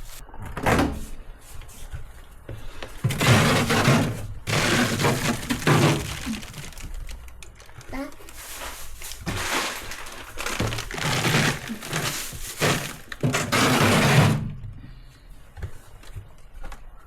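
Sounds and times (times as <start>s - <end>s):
rustling with knocks: 1.6s - 16.9s.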